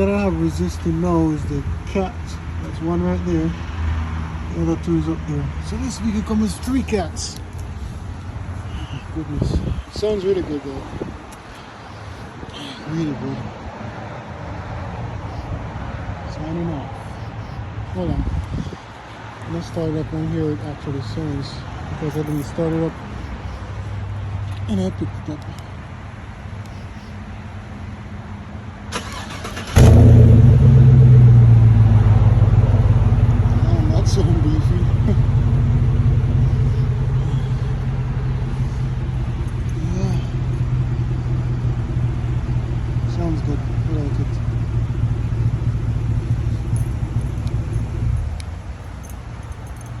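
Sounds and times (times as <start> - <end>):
car engine starting and idling: 28.9 - 50.0
low exhaust rumble: 29.8 - 48.8.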